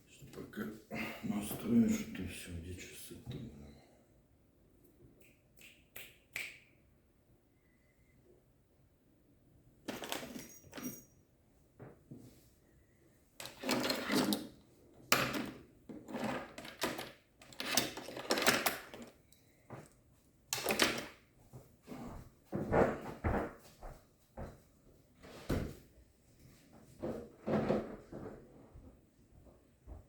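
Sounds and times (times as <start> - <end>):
objects moved rustled and knocked: 13.4 - 20.0, 26.5 - 29.1.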